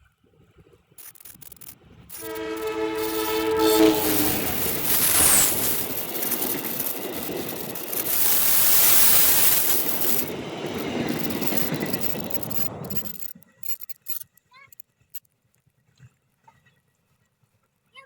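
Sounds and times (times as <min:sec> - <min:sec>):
train wheels clattering on rails: 0:01.0 - 0:13.4.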